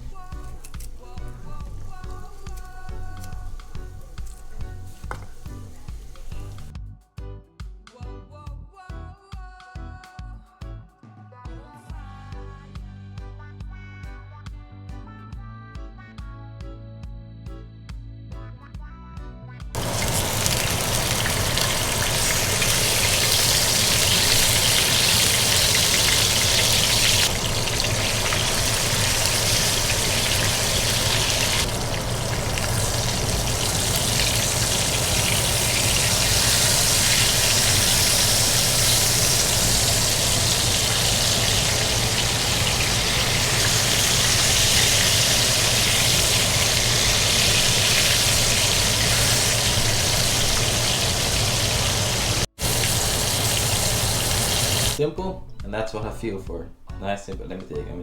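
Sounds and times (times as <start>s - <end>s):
fish frying in hot oil: 0.0s - 6.7s, 19.8s - 55.0s.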